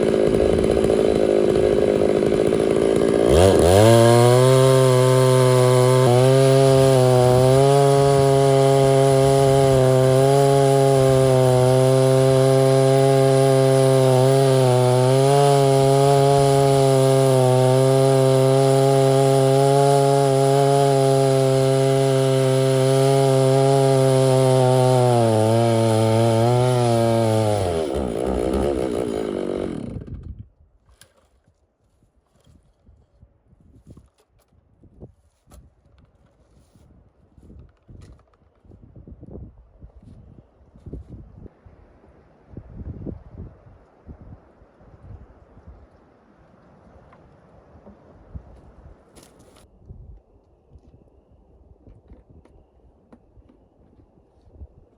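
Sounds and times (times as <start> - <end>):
chainsaw cutting log: 0.0 - 31.4, 49.2 - 49.7.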